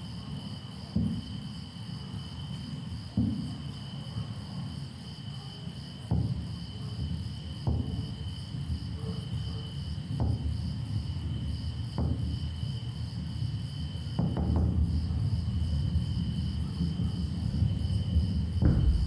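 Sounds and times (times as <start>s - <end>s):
crickets chirping: 0.0s - 19.0s
low rumble: 18.1s - 19.0s.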